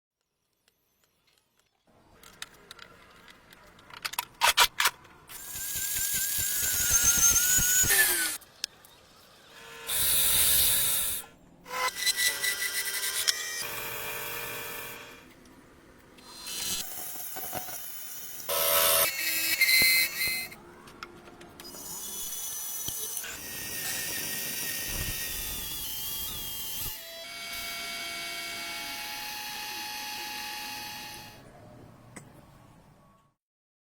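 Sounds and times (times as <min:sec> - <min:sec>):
power tool running: 0:05.3 - 0:08.4, 0:21.8 - 0:31.4.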